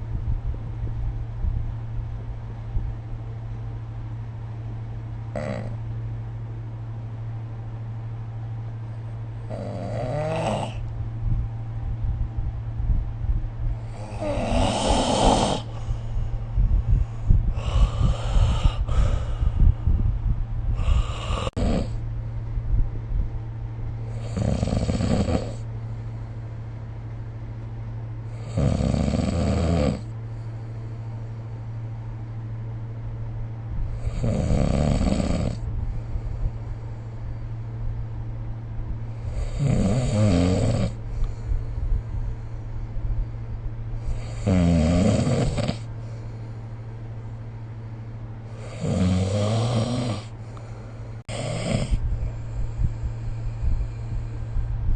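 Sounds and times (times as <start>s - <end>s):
steady low hum: 0.0s - 54.9s
person snoring: 5.4s - 5.8s, 9.5s - 10.9s, 13.8s - 15.9s, 17.5s - 19.6s, 20.7s - 22.0s, 24.1s - 25.7s, 28.3s - 30.1s, 33.9s - 35.6s, 39.2s - 41.0s, 44.1s - 45.9s, 48.5s - 50.4s, 51.3s - 54.3s.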